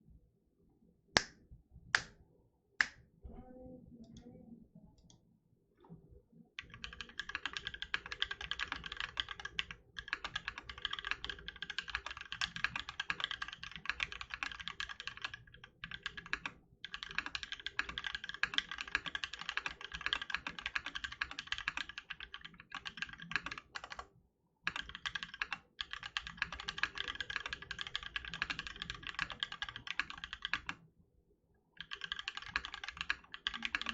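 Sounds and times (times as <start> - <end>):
mechanical keyboard typing: 6.6 - 24.1, 24.7 - 30.8, 31.8 - 33.9.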